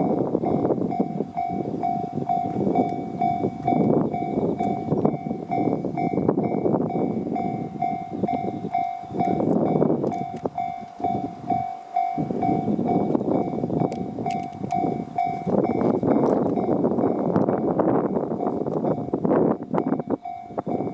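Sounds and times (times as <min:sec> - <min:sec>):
passing electric train rumble: 0:00.0 - 0:20.9
level crossing bell ringing: 0:00.5 - 0:16.8.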